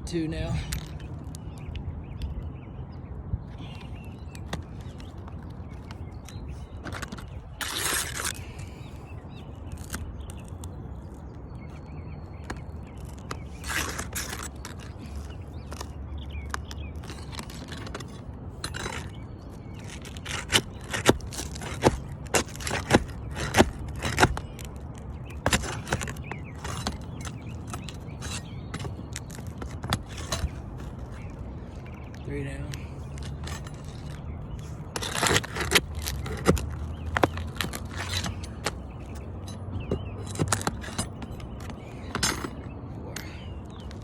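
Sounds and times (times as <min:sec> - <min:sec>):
nail scraping and clicking: 0:09.6 - 0:42.7.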